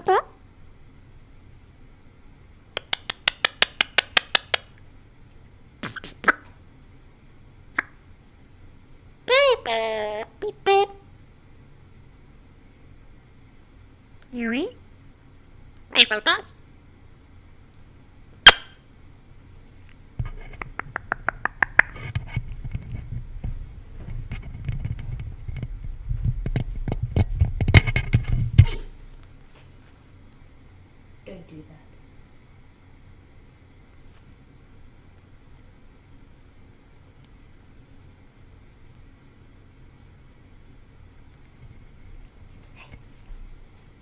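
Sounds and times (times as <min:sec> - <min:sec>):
parrot clicking: 0:02.7 - 0:04.8, 0:20.6 - 0:22.2
rubbing and bumping on microphone: 0:20.2 - 0:29.9.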